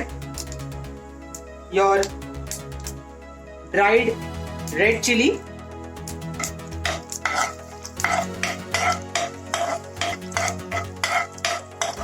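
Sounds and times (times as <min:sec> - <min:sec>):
spices frying in oil: 0:06.0 - 0:12.0
spoon scraping a pan: 0:06.4 - 0:12.0.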